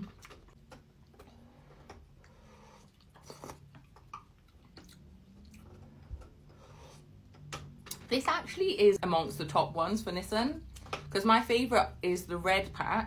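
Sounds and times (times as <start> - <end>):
close-up chewing: 0.0 - 8.0.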